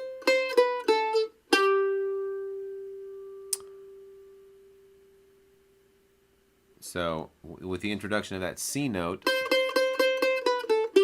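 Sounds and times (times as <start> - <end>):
mandolin notes: 0.0 - 5.8, 9.0 - 11.0
small click: 3.5 - 3.8.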